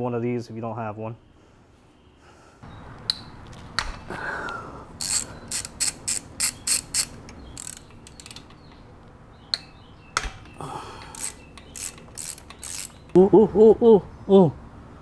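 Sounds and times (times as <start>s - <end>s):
ratchet clicking: 5.0s - 8.5s, 11.1s - 13.1s.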